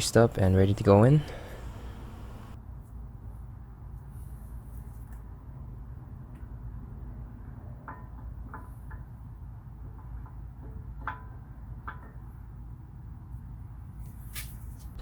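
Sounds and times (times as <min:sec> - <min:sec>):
steady low rumble: 0:00.0 - 0:02.6.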